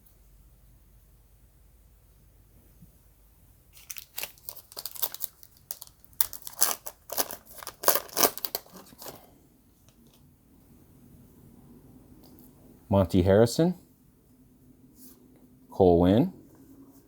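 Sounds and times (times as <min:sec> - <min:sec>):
wrapper crinkling and tearing: 0:03.7 - 0:09.3.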